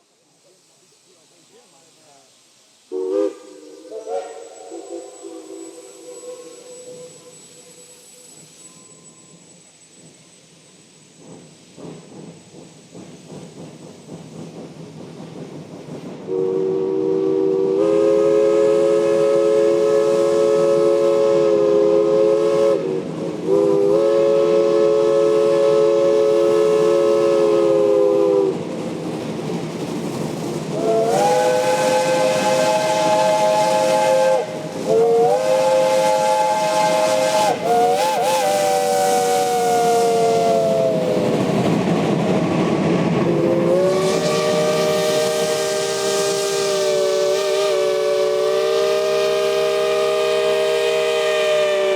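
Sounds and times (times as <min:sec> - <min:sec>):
steam hissing: 0:00.0 - 0:51.9
steam locomotive chime whistle: 0:02.9 - 0:11.2, 0:16.3 - 0:28.6, 0:30.8 - 0:41.4, 0:43.3 - 0:51.9.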